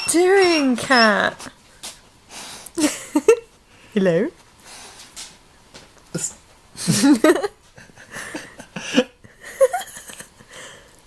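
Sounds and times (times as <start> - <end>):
woman laughing softly: 2.8 - 3.6, 6.2 - 10.8.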